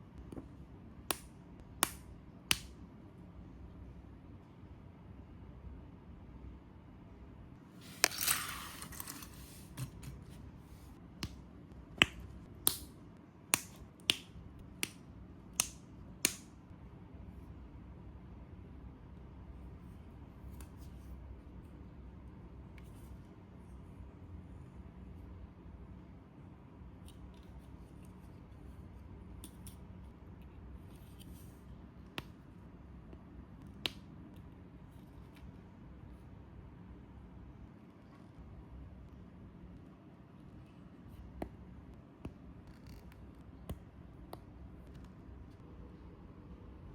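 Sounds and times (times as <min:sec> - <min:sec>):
sharp plastic snaps: 0:11.2 - 0:16.6.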